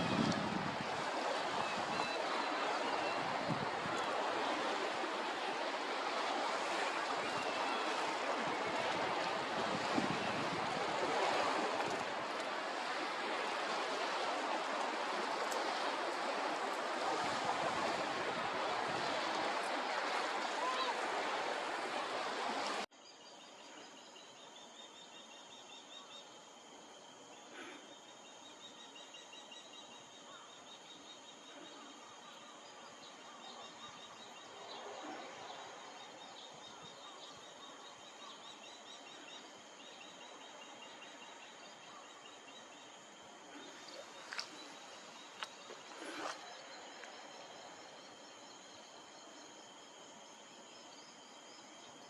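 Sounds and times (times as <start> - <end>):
insects trilling: 23.0 - 52.0.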